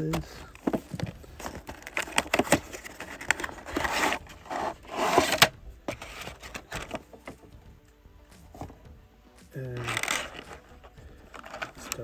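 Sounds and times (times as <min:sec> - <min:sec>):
packaging rustling: 0:00.0 - 0:07.6, 0:09.7 - 0:12.0
scraping strokes: 0:00.2 - 0:07.5
blister packaging being cut: 0:09.8 - 0:10.8.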